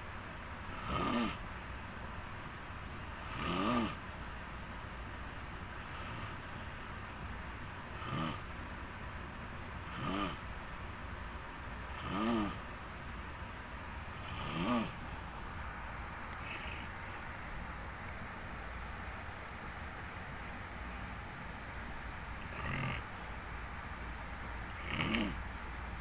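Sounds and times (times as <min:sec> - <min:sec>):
person snoring: 0:00.8 - 0:01.4, 0:03.2 - 0:04.0, 0:05.8 - 0:06.4, 0:07.9 - 0:08.4, 0:09.8 - 0:10.4, 0:11.9 - 0:12.6, 0:14.1 - 0:15.1, 0:16.4 - 0:16.9, 0:22.5 - 0:23.2, 0:24.8 - 0:25.4.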